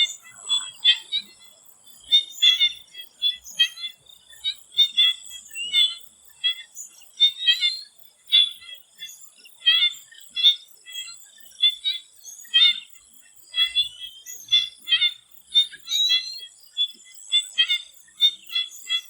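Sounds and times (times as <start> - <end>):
frogs calling: 0.0 - 19.0.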